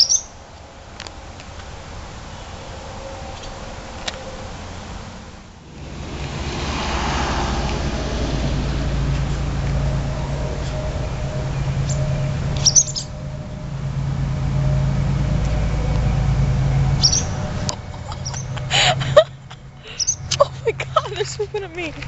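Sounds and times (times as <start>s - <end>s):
steady low rumble: 5.1s - 22.0s
swallows chirping: 11.6s - 13.2s, 17.0s - 17.5s, 18.1s - 18.6s, 19.9s - 20.4s.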